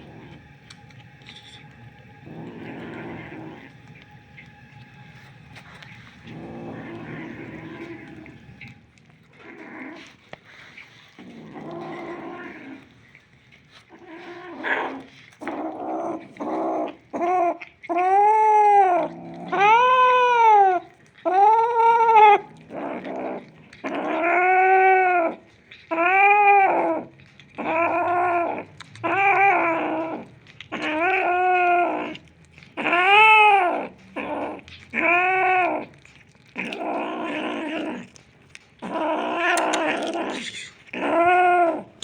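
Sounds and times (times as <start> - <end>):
cat growling: 0.0 - 42.0
cat yowling: 17.1 - 32.2, 32.8 - 38.2, 38.8 - 42.0.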